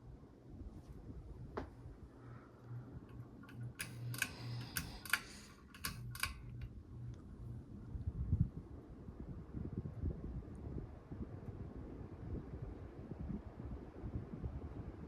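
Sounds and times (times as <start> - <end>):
ceiling fan motor hum: 0.0 - 15.0
sharp clicks: 2.6 - 7.3.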